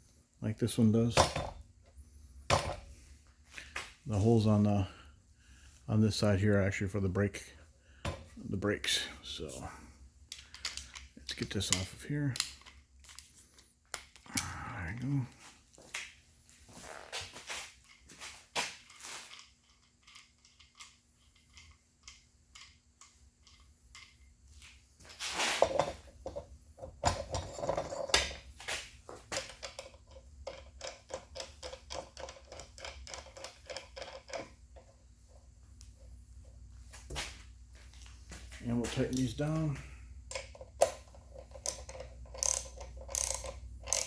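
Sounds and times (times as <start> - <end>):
metal parts clicking and knocking: 1.0 - 1.6, 10.3 - 14.6, 18.7 - 24.3, 25.6 - 28.4, 29.3 - 35.0, 40.2 - 44.0
rustling and scraping: 15.2 - 21.5, 23.6 - 29.6.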